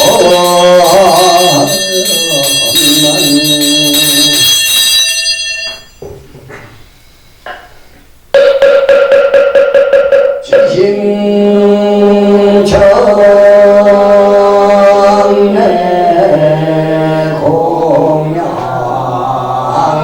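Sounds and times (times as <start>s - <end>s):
chanting voice: 0.0s - 4.6s, 10.4s - 20.0s
fast-pulsing ringing over held tone: 0.0s - 5.9s, 8.4s - 10.9s
handbell ringing: 0.0s - 6.0s.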